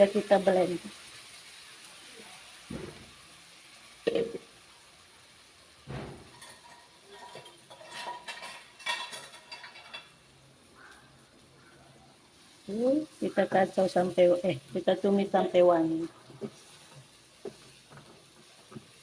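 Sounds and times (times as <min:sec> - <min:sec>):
utensil knocking and scraping in pan: 0:05.9 - 0:10.2, 0:16.2 - 0:19.0.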